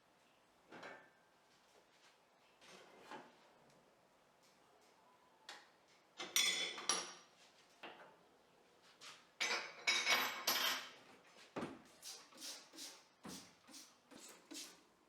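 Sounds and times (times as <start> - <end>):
dishes and cutlery clinking: 6.2 - 7.3, 9.4 - 10.9.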